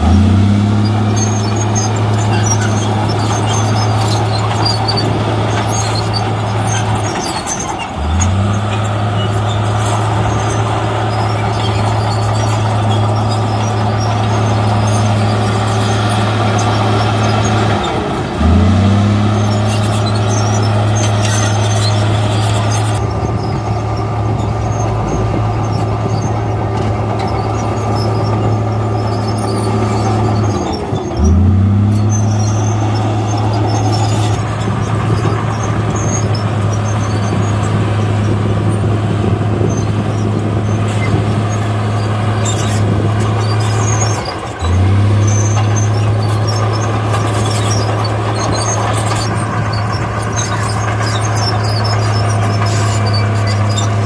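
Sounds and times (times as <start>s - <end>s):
diesel engine under load: 0.0s - 54.0s.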